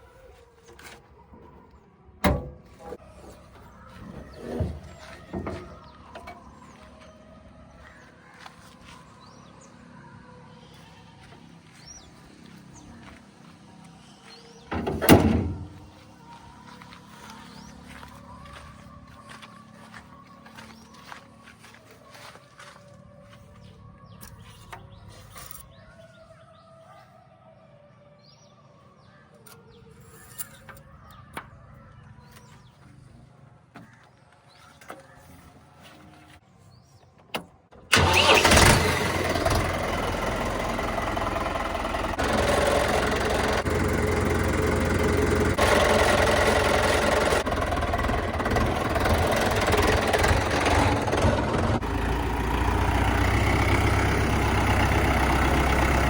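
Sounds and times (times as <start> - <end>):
diesel engine running: 0.6 - 25.6, 37.9 - 56.0.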